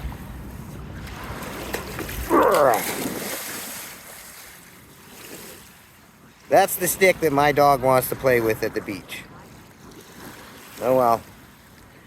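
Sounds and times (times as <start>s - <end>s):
surf: 0.0s - 12.0s
wind: 0.0s - 12.0s
man grunting with effort: 2.2s - 3.0s.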